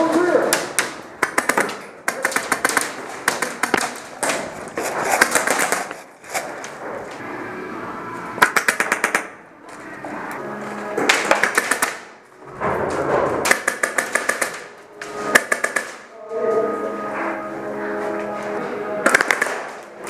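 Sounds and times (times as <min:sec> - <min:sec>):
airsoft guns firing bursts: 0:00.6 - 0:04.0, 0:05.2 - 0:05.9, 0:08.4 - 0:09.3, 0:11.2 - 0:12.1, 0:13.5 - 0:14.7, 0:15.3 - 0:16.1, 0:19.1 - 0:19.8.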